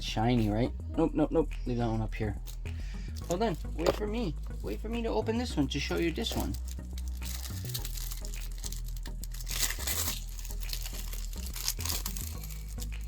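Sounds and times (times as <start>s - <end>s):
plastic packaging being torn: 5.9s - 13.0s.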